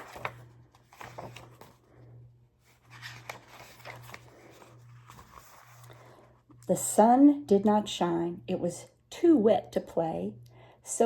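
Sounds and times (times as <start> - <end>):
book pages rustling: 0.0 - 1.9, 2.6 - 6.6.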